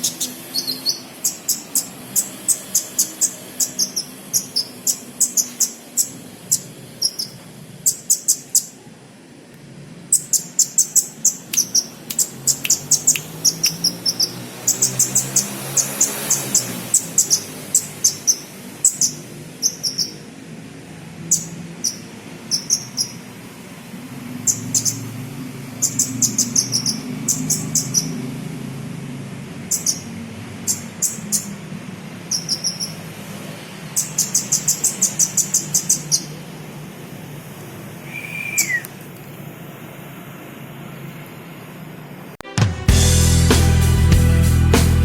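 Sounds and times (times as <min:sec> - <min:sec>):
sunbird high chirping song: 0:00.0 - 0:08.8, 0:10.1 - 0:20.3, 0:21.2 - 0:23.4, 0:24.3 - 0:28.3, 0:29.6 - 0:33.1, 0:33.8 - 0:36.4, 0:38.0 - 0:38.9.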